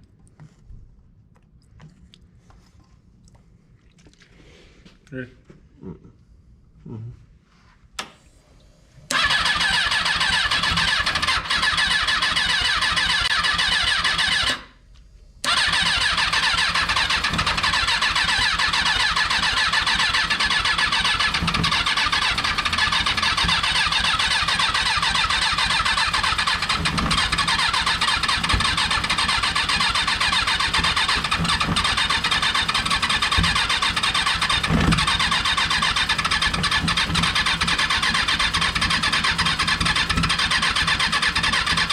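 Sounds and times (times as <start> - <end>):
motorcycle starter cranking: 9.1 - 14.8, 15.4 - 41.9.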